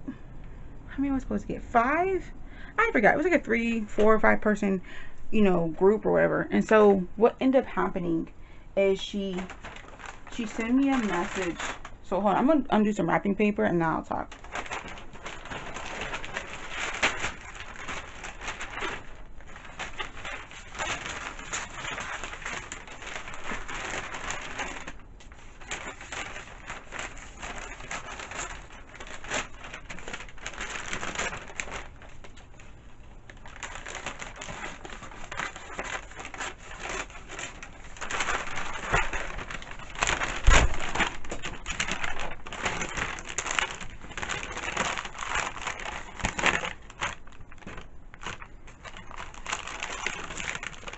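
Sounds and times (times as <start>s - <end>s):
wrapping paper rustling: 1.0s - 50.9s.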